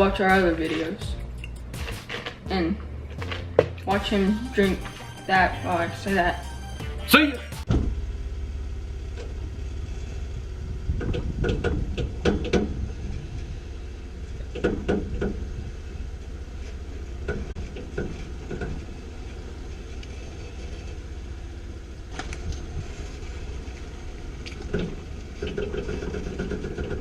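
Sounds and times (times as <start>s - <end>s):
vehicle engine rumbling: 0.0s - 27.0s
rattle: 24.4s - 27.0s.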